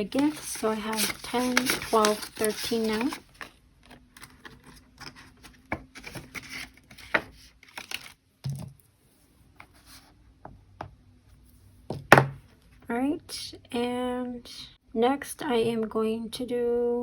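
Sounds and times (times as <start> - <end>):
paper money rustling: 0.0 - 8.2.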